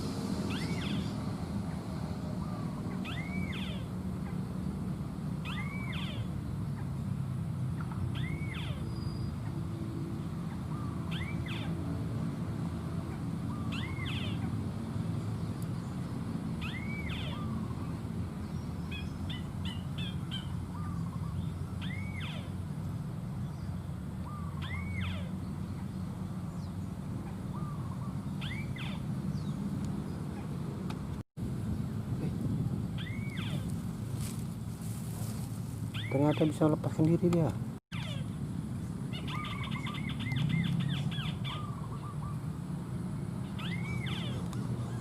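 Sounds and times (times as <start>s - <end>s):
bird whistled call: 0.5s - 1.2s, 2.4s - 3.9s, 5.4s - 6.3s, 7.8s - 9.4s, 10.6s - 11.8s, 13.5s - 14.4s, 16.6s - 17.8s, 18.9s - 22.5s, 24.3s - 25.3s, 27.5s - 29.5s, 33.0s - 33.7s, 39.1s - 42.4s, 43.5s - 45.0s
steady low rumble: 29.0s - 36.0s.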